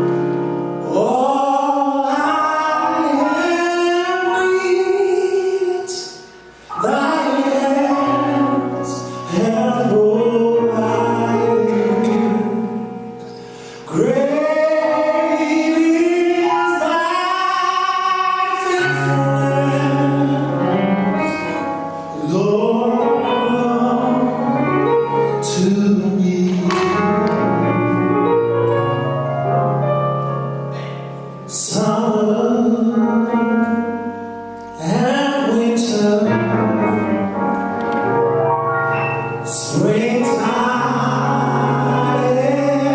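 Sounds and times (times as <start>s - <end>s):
instrumental backing: 0.0s - 42.9s
gospel choir singing: 6.7s - 12.9s, 13.9s - 21.5s, 22.2s - 28.0s, 39.4s - 42.9s.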